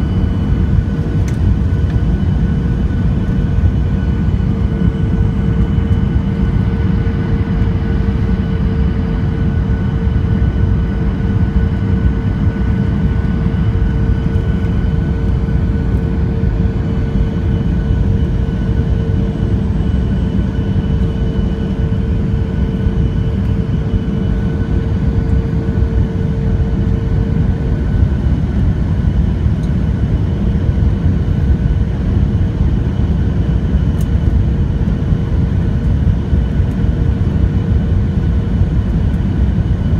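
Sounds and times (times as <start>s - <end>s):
steady cabin hum: 0.0s - 29.9s
jet engines rumbling: 0.0s - 39.9s.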